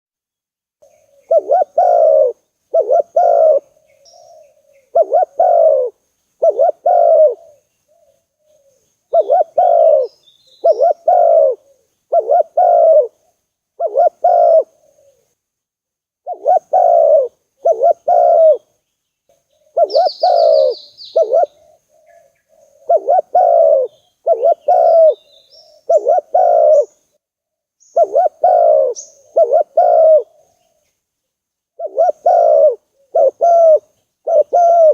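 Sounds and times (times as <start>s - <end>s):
high bird trill: 0.8s - 15.2s, 19.5s - 27.2s
dove cooing: 0.8s - 15.4s, 16.2s - 18.7s, 19.5s - 27.2s, 27.8s - 30.9s, 31.8s - 34.9s
small birds chirping: 0.8s - 15.4s, 16.2s - 34.9s.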